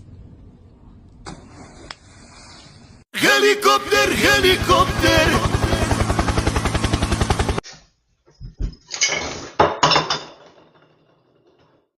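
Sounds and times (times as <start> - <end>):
hard objects clattering falling: 8.6 - 11.9.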